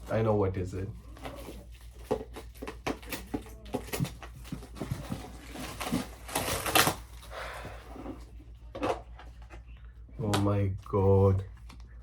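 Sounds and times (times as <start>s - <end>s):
plastic packaging rustling: 1.1s - 7.3s
loud crinkling tear: 5.4s - 7.2s.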